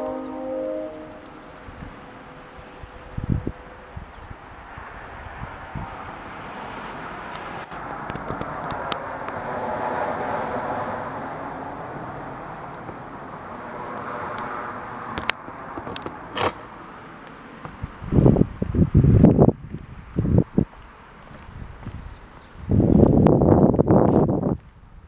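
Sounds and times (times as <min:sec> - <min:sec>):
vehicle passing by: 0:08.3 - 0:12.7.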